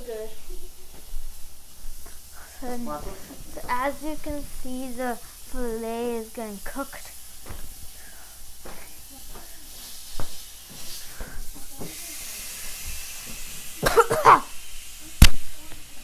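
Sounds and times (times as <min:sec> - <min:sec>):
steak sizzling in a pan: 0:00.0 - 0:16.0.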